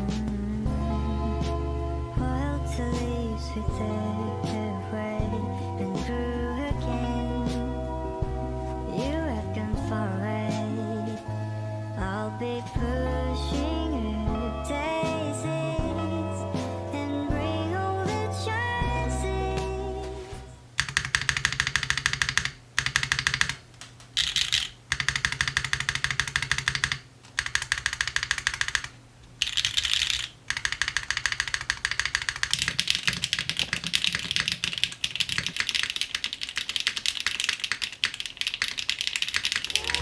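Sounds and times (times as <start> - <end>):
mechanical keyboard typing: 20.8 - 40.0.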